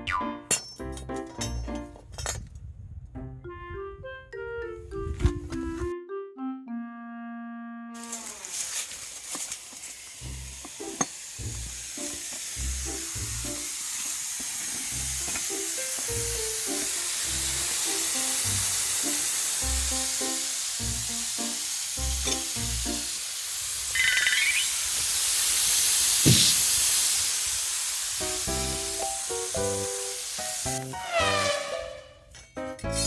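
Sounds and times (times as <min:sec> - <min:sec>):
water spraying from leaking pipe: 0:08.0 - 0:31.9.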